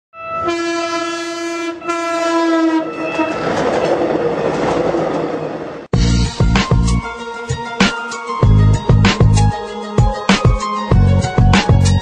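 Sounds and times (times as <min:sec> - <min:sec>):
horn blasts: 0:00.2 - 0:03.5
music with heavy beat: 0:06.0 - 0:12.0.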